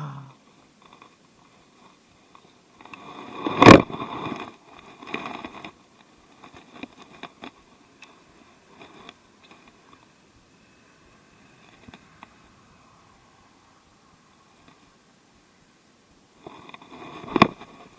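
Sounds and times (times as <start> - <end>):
scraping and rustling handling noise: 0.4 - 10.3, 16.2 - 17.9.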